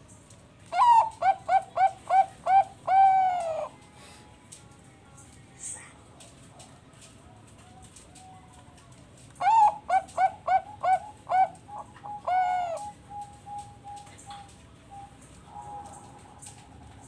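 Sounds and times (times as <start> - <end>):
dove cooing: 0.7 - 3.8, 9.4 - 17.0.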